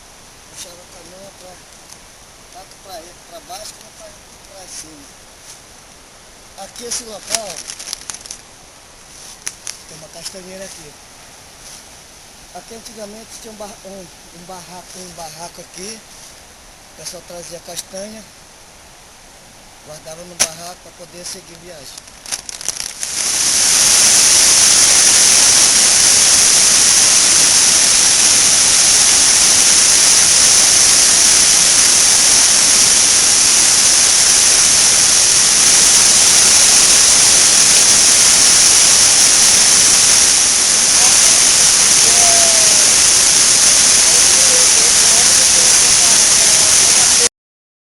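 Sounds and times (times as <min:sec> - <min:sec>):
waterfall rushing: 0:22.9 - 0:47.3.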